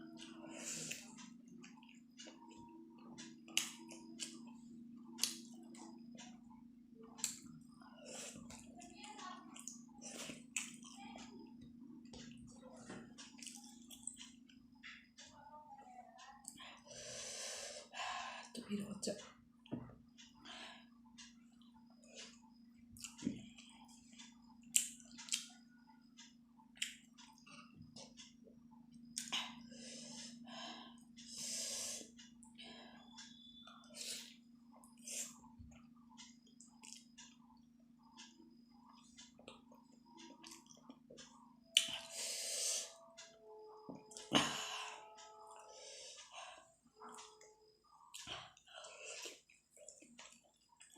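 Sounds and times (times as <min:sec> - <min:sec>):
faint low hum: 0:00.0 - 0:50.9
chewing and smacking: 0:09.5 - 0:11.3, 0:13.1 - 0:14.6, 0:22.2 - 0:25.5, 0:35.7 - 0:37.5, 0:38.9 - 0:42.0, 0:47.9 - 0:50.9
person chewing with mouth smacks: 0:36.8 - 0:37.1.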